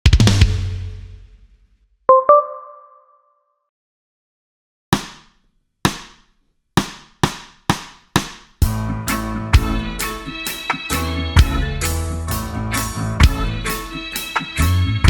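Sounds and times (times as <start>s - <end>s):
backing track with drums and guitar: 0.0s - 1.2s, 7.3s - 15.0s.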